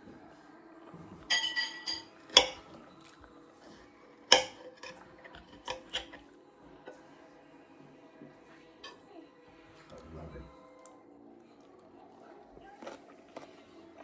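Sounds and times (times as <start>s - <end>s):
cutlery clinking on a plate: 1.3s - 2.8s, 4.3s - 6.2s.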